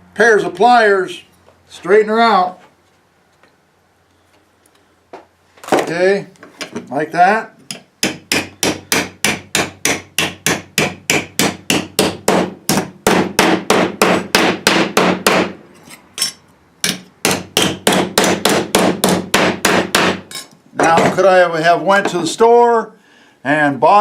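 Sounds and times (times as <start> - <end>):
hammer striking copper pipe: 7.7 - 15.6, 16.2 - 21.2.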